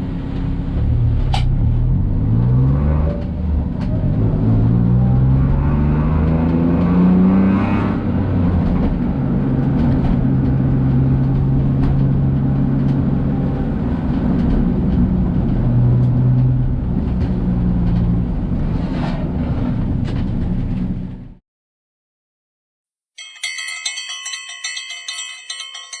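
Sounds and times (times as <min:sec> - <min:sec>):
car engine under load: 0:00.0 - 0:21.4
bright bell-like chime: 0:23.2 - 0:26.0.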